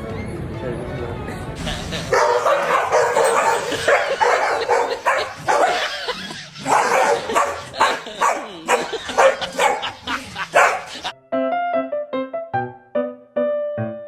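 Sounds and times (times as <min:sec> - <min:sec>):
dog barking sharply: 0:02.0 - 0:06.0, 0:06.6 - 0:11.1.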